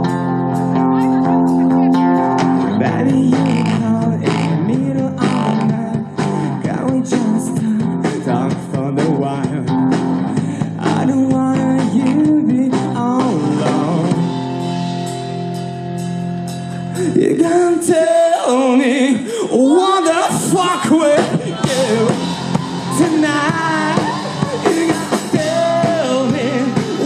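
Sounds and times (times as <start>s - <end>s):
drums: 0.0s - 27.0s.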